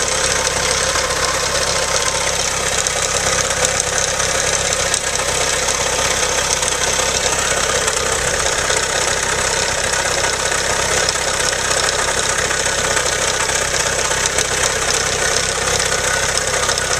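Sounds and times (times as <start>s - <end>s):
engine idling with ticking: 0.0s - 16.9s.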